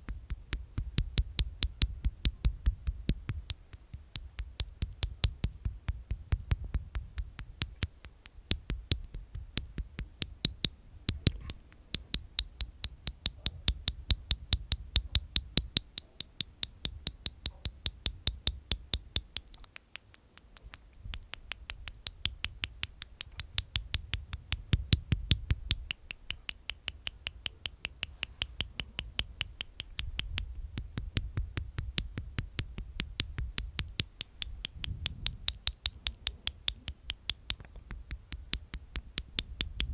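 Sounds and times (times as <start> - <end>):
wet mouth clicking: 0.0 - 39.9.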